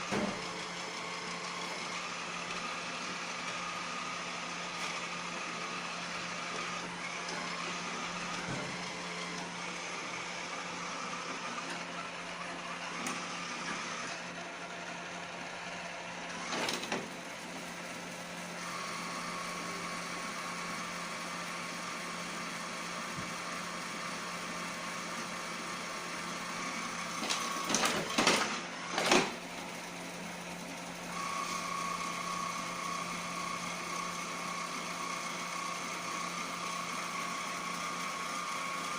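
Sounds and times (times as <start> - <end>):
robot vacuum motor hum and whine: 0.0 - 38.9.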